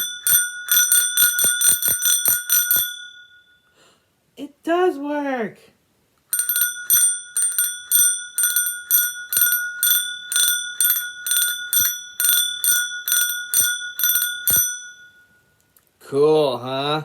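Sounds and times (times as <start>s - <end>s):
bicycle bell ringing: 0.0s - 3.7s, 6.3s - 15.7s.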